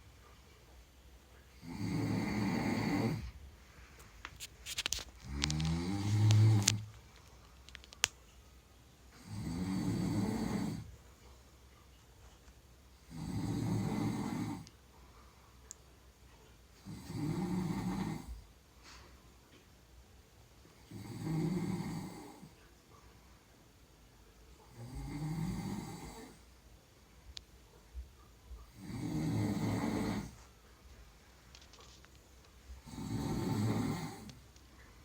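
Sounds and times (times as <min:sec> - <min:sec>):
person snoring: 0:01.6 - 0:03.4, 0:05.2 - 0:07.0, 0:09.2 - 0:10.9, 0:13.1 - 0:14.7, 0:16.8 - 0:18.4, 0:20.9 - 0:22.5, 0:24.7 - 0:26.4, 0:28.7 - 0:30.4, 0:32.8 - 0:34.4.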